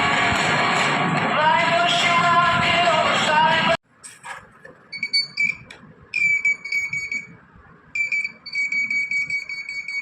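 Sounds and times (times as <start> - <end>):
electronic alarm buzzer beeping: 4.9 - 7.4, 8.0 - 10.0.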